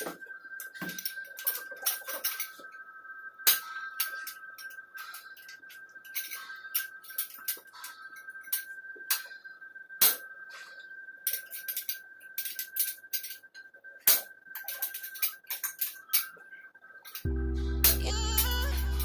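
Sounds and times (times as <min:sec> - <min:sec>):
metal tools clinking: 0:00.0 - 0:02.7, 0:04.0 - 0:09.2, 0:11.3 - 0:13.6, 0:14.5 - 0:16.4
music: 0:17.2 - 0:19.0
faint high tone: 0:17.3 - 0:19.0.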